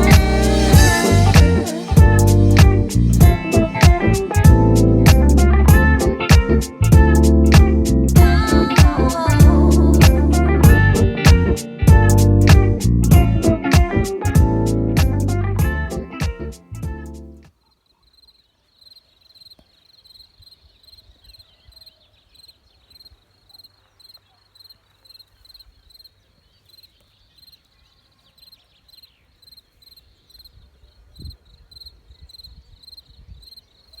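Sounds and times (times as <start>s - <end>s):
crickets chirping: 17.9s - 27.8s, 28.4s - 34.0s
wind rumbling on microphone: 30.5s - 33.6s.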